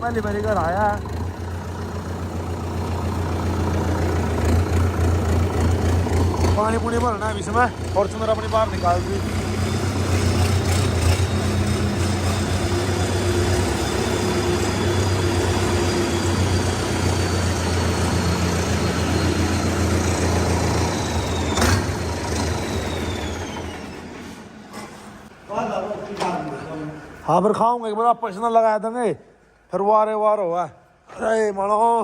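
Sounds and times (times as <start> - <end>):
tractor diesel engine running: 0.0 - 24.7.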